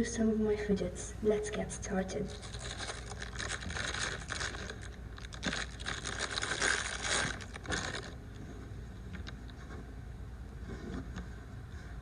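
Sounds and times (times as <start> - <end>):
fidget toys rustling and clicking: 2.3 - 8.2.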